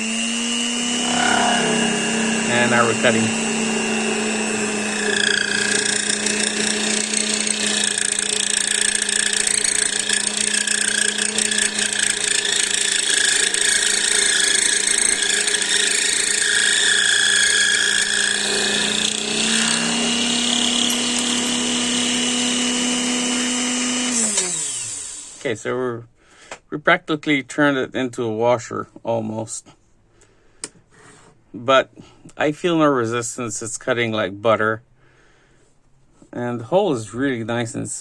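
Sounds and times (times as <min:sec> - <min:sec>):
drill running: 0:00.0 - 0:25.5
high squeal of drill bit cutting: 0:00.6 - 0:22.6.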